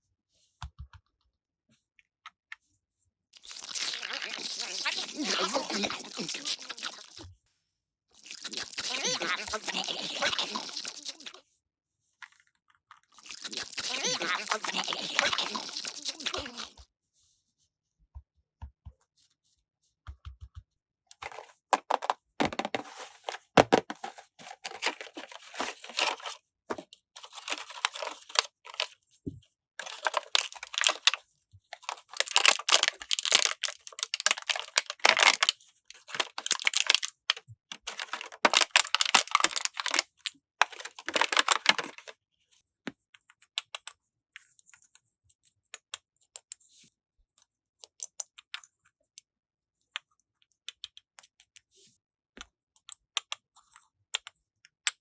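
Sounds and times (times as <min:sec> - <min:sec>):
plastic packaging crinkling and tearing: 0:03.4 - 0:07.2, 0:08.2 - 0:11.4, 0:13.2 - 0:16.8, 0:29.8 - 0:31.2, 0:31.9 - 0:35.5, 0:36.1 - 0:37.1, 0:37.9 - 0:40.0, 0:40.6 - 0:42.0.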